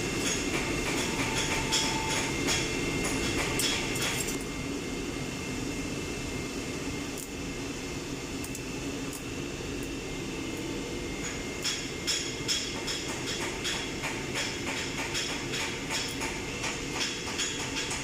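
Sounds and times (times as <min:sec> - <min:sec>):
machinery hum: 0:00.0 - 0:18.0.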